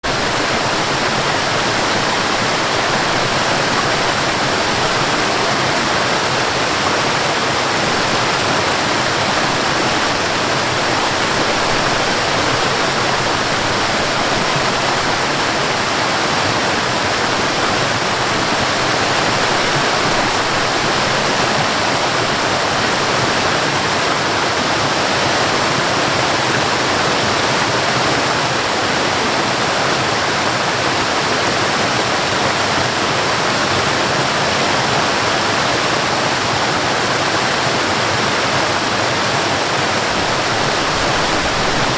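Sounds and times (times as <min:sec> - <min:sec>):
waterfall rushing: 0:00.0 - 0:41.9.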